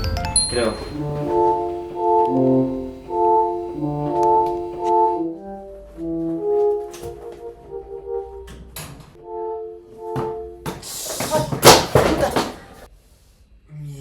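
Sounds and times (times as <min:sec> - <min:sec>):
synthesized keyboard chords: 0:00.0 - 0:10.7.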